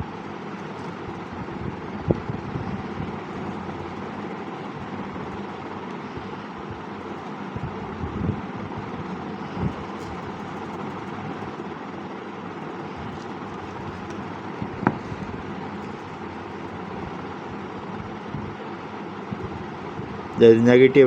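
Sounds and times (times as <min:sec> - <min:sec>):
steady background noise: 0:00.0 - 0:21.0.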